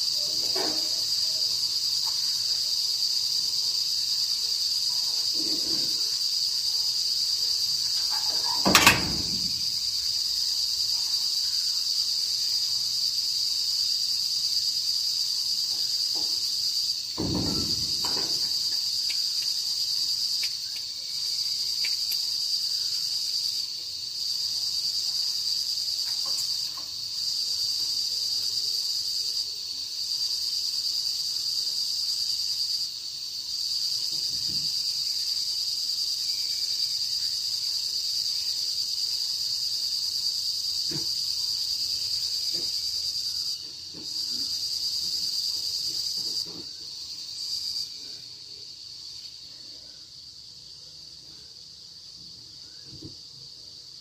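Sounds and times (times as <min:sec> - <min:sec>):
crickets chirring: 0:00.0 - 0:54.0
dull thump: 0:08.4 - 0:09.8, 0:17.2 - 0:18.6
sharp knock: 0:08.6 - 0:09.8, 0:17.2 - 0:18.5.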